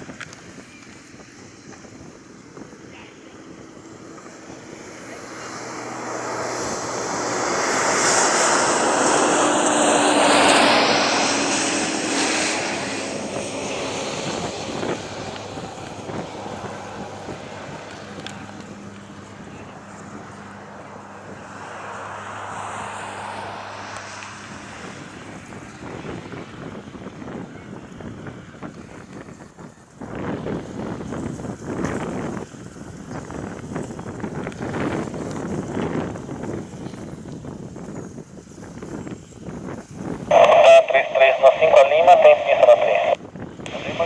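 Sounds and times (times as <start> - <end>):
aircraft engine whine passing: 0.0 - 44.0.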